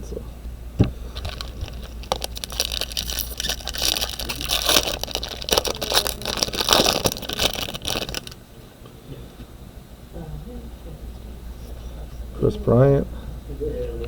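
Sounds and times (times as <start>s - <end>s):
card pack wrappers crinkling: 1.1s - 8.4s.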